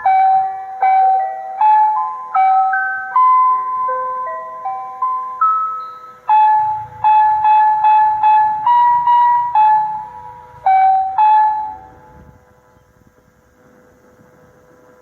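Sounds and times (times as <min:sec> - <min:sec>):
loudspeaker chime melody: 0:00.0 - 0:12.0.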